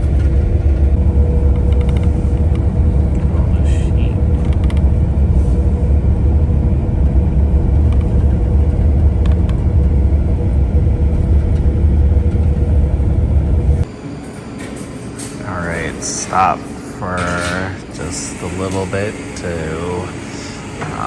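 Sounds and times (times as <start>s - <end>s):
bus engine and road rumble: 0.0s - 13.9s
faint steady hum: 0.0s - 14.3s.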